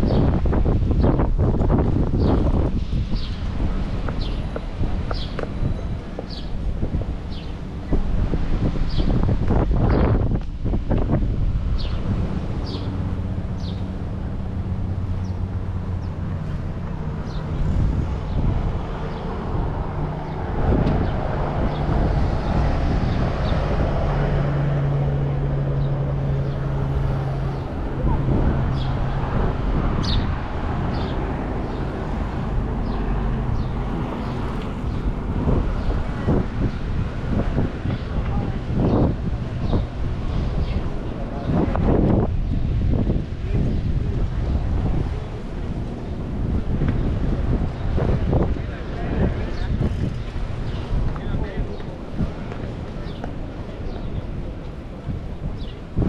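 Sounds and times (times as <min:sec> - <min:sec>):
passing vehicle engines hum: 0:00.0 - 0:56.0
wind on microphone: 0:00.0 - 0:56.0
faint voices: 0:13.1 - 0:56.0.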